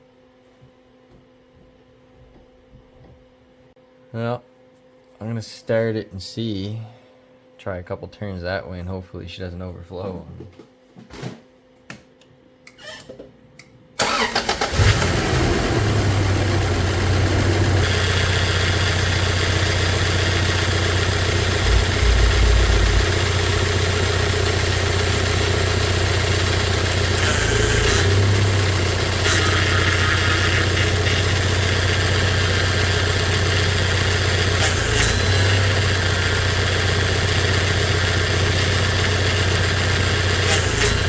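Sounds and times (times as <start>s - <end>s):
car engine starting: 14.0s - 41.0s
engine idling: 14.0s - 41.0s.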